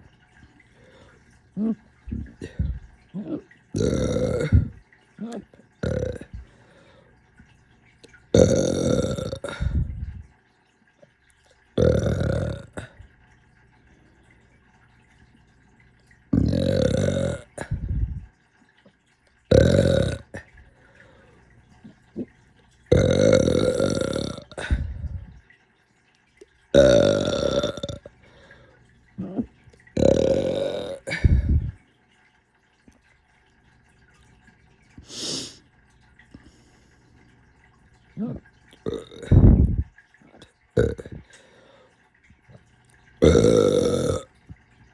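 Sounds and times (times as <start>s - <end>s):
person burping loudly: 1.6s - 6.5s, 8.3s - 10.2s, 11.8s - 13.0s, 16.3s - 18.2s, 19.5s - 20.5s, 22.9s - 25.3s, 26.7s - 28.2s, 29.2s - 31.8s, 38.2s - 39.8s, 40.8s - 41.2s, 43.2s - 44.3s
short hissy breath: 35.0s - 35.6s.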